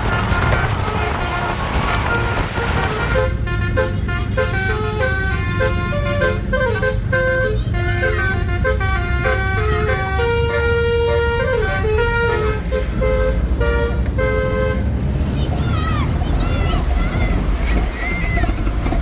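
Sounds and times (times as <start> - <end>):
multi-tone bus horn melody: 0.0 - 15.0.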